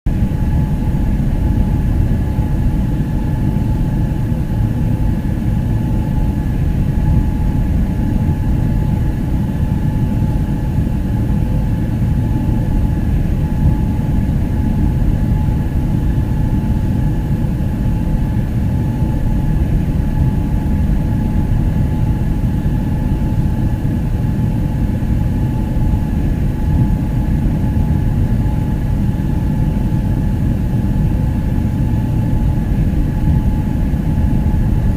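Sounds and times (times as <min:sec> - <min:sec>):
faint steady whine: 0:00.1 - 0:34.9
jet airliner roar: 0:00.1 - 0:34.9.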